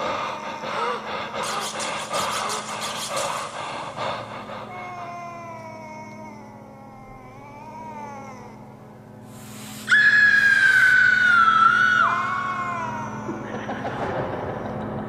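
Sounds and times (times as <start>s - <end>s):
wavering howl: 0.0s - 3.3s, 9.8s - 15.0s
short hiss: 9.3s - 9.9s
high scream: 9.7s - 13.6s.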